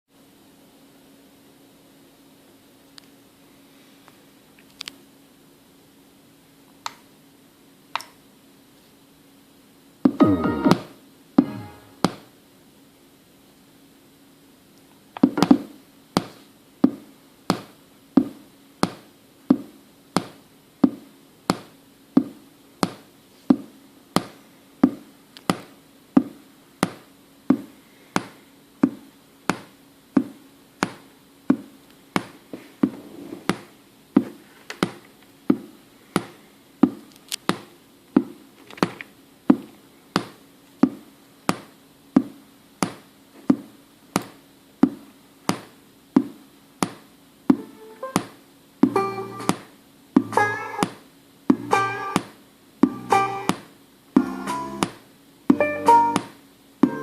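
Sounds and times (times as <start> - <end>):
speaker sharp pops with hum: 15.1 - 57.0.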